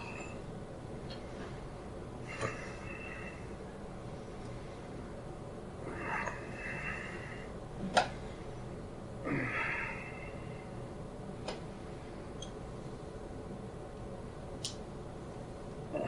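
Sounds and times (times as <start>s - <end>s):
person breathing out heavily: 2.2s - 3.6s, 5.8s - 7.6s, 9.2s - 10.8s.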